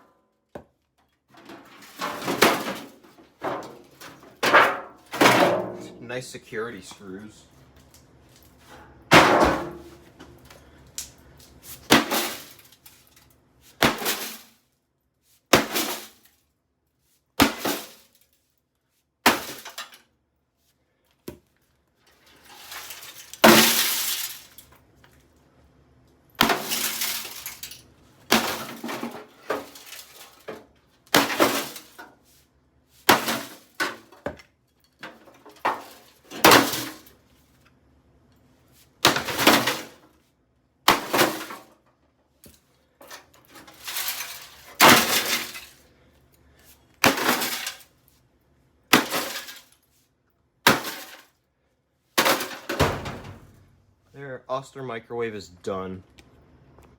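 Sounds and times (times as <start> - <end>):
hammer smashing microwave oven: 1.5 - 6.0, 9.1 - 10.0, 11.8 - 12.6, 13.8 - 14.5, 15.5 - 16.2, 17.4 - 18.0, 19.2 - 19.9, 22.8 - 24.3, 26.4 - 32.1, 33.0 - 34.4, 35.1 - 37.1, 39.0 - 40.0, 40.9 - 41.7, 43.5 - 45.7, 47.0 - 47.8, 48.9 - 49.6, 50.6 - 51.3, 52.2 - 53.6
debris rattling: 43.5 - 45.8.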